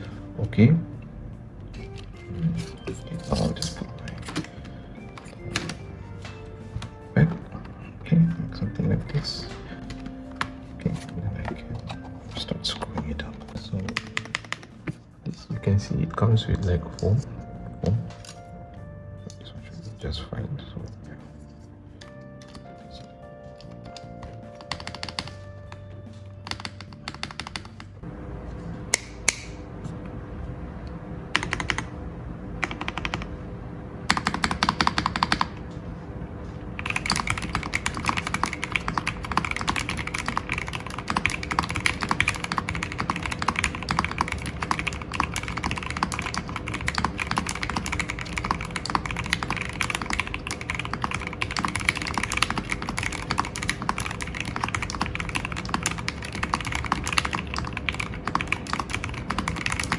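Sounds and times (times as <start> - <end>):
mechanical keyboard typing: 1.8 - 7.8, 9.1 - 15.0, 23.7 - 25.5, 26.4 - 28.0, 31.4 - 31.9, 32.6 - 33.4, 34.1 - 35.6, 36.8 - 59.9.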